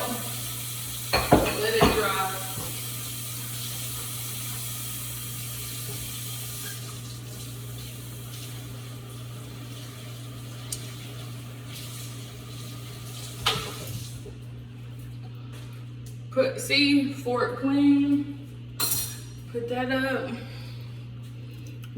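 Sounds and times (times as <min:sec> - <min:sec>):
bowl and fork rinsed: 0:00.0 - 0:04.7
tap running into sink: 0:01.0 - 0:02.9, 0:13.2 - 0:14.2
dishes clattering: 0:01.1 - 0:02.8, 0:18.8 - 0:19.4.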